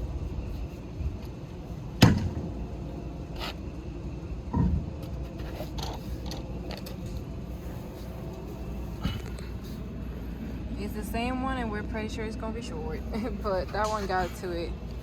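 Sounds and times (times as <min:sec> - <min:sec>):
dull thump: 0:02.0 - 0:02.5.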